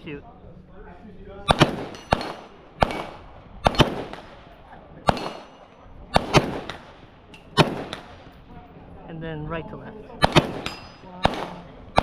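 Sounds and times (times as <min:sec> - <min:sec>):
airsoft pistol shots: 0:01.5 - 0:04.4, 0:05.1 - 0:08.2, 0:10.2 - 0:12.0.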